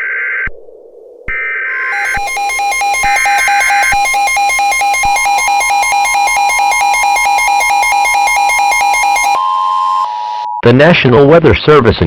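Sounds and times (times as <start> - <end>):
buzzing data noise: 1.8 - 9.4
harsh pulsing electronic tone: 1.8 - 10.1
steady higher alert tone: 1.8 - 10.5.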